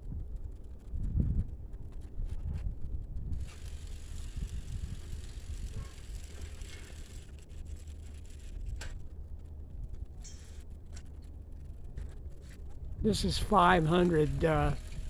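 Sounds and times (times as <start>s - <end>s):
wind rumble on microphone: 0.0s - 6.4s, 14.7s - 15.0s
bicycle freewheel ticking: 3.3s - 9.0s, 14.2s - 15.0s.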